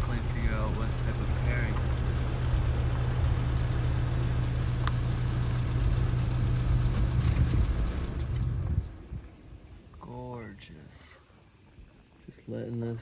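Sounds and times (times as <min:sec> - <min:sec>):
vehicle engine idling: 0:00.0 - 0:10.0.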